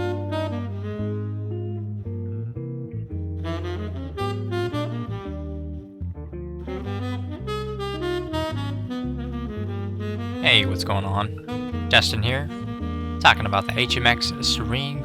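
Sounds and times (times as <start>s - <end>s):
instrumental background music: 0.0s - 15.0s.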